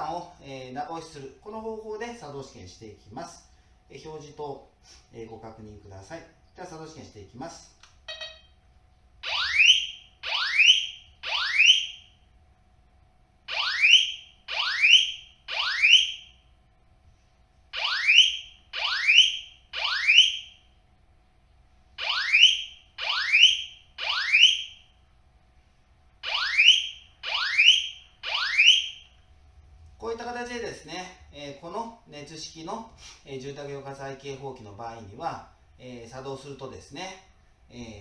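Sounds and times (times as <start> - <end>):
fire alarm rising beeps: 8.1 - 8.6, 9.2 - 12.1, 13.5 - 16.4, 17.8 - 20.6, 22.0 - 24.8, 26.2 - 29.1.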